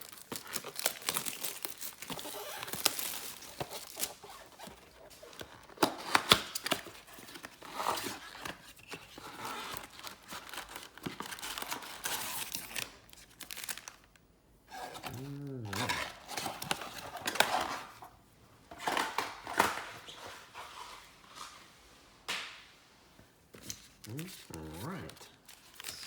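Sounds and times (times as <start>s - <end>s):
wrappers ripping: 0.0s - 7.4s, 9.8s - 17.5s, 23.8s - 26.0s
wrapper and cardboard crinkling: 0.0s - 18.1s, 23.6s - 26.0s.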